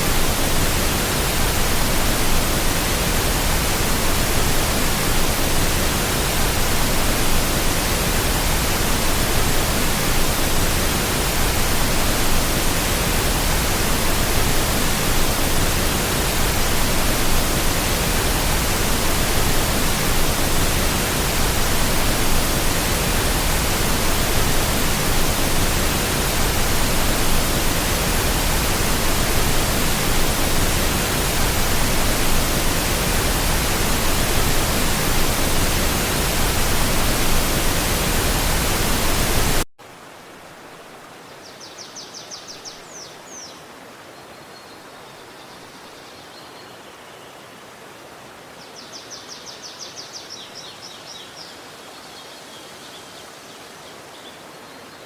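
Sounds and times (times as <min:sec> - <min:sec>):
water rushing: 0:00.0 - 0:41.1.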